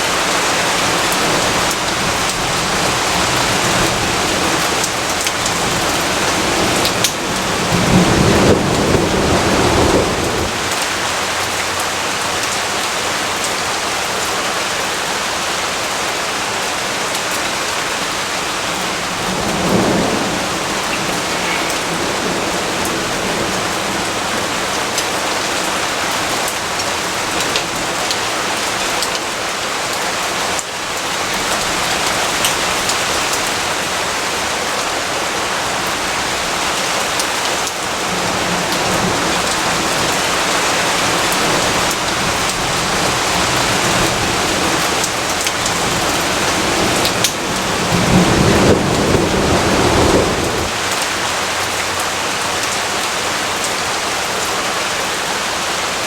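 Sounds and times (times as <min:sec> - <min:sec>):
steady rain: 0:00.0 - 0:56.0
thunder rumbling: 0:00.6 - 0:11.5, 0:18.2 - 0:27.8, 0:37.8 - 0:51.7.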